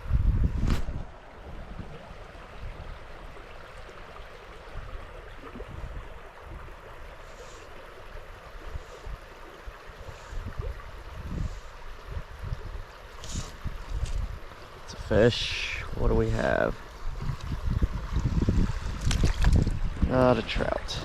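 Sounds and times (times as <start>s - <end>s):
wind buffeting microphone: 0.0s - 3.2s, 10.0s - 21.0s
small stream flowing: 1.0s - 21.0s.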